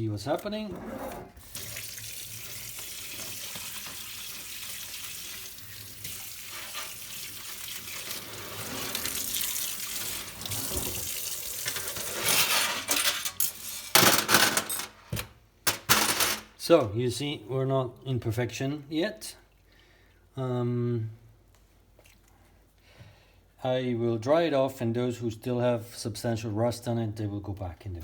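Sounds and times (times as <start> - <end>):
metal parts clinking: 12.2 - 16.5.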